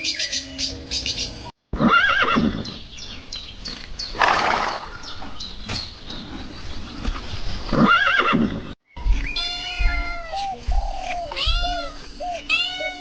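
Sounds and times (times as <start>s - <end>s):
horse whinnying: 1.8s - 2.7s, 7.7s - 8.7s
animal high-pitched calls: 9.0s - 13.0s.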